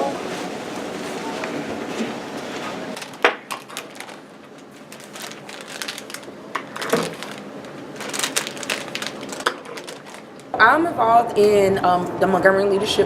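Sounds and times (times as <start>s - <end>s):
objects clicking and rustling: 3.0s - 10.6s.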